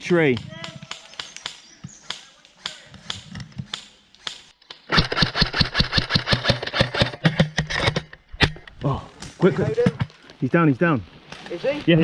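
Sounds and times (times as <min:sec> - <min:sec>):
sharp clicks: 0:00.4 - 0:07.2
airsoft gun firing full-auto: 0:04.9 - 0:06.7.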